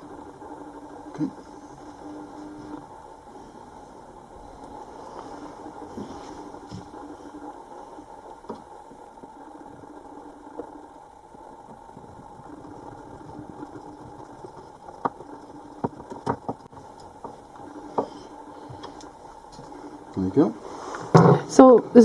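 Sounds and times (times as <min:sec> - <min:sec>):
motor humming: 0:00.0 - 0:22.0
sharp knocks and clicks: 0:14.0 - 0:18.1.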